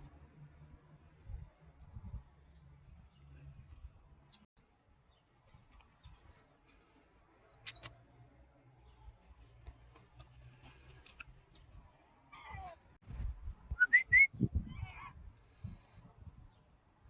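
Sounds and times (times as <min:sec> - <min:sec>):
sharp clicks: 0:07.6 - 0:08.0.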